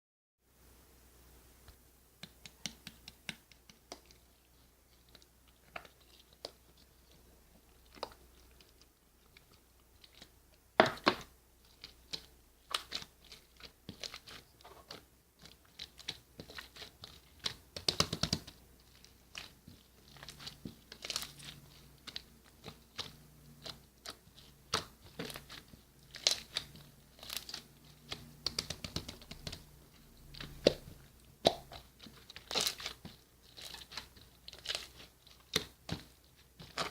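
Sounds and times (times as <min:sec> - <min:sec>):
foam-bead slime crunching: 0:11.7 - 0:36.9.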